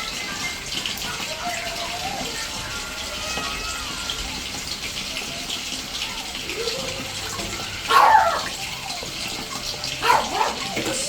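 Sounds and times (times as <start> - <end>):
running water: 0.0 - 11.0
dog barking: 7.8 - 8.6, 9.9 - 10.9.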